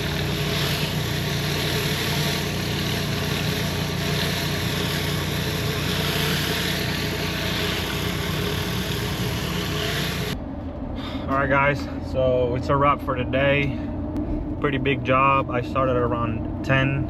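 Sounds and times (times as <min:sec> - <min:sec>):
engine running with hiss: 0:00.0 - 0:10.4.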